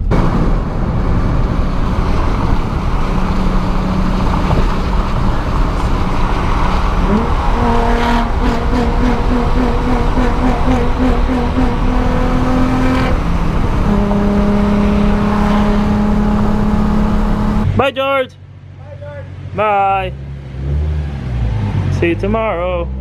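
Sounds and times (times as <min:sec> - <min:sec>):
car engine and road noise: 0:00.0 - 0:23.0
pulsing pitched tone: 0:01.4 - 0:17.7.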